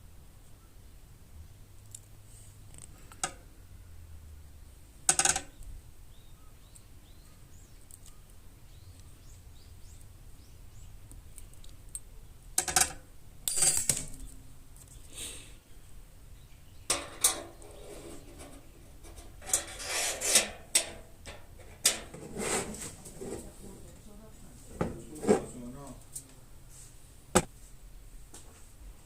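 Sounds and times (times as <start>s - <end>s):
faint bird chirps: 0.4s - 1.6s, 5.5s - 12.4s
metal pieces clinking: 12.6s - 14.3s.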